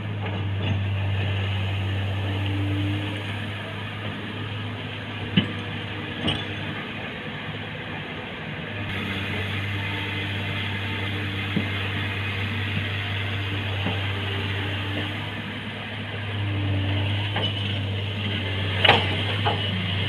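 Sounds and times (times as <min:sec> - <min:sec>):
excavator engine running: 0:00.0 - 0:20.0.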